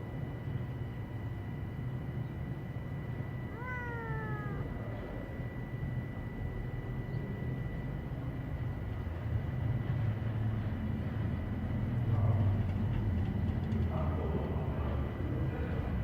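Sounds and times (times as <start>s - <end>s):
cat meowing: 3.5s - 5.2s.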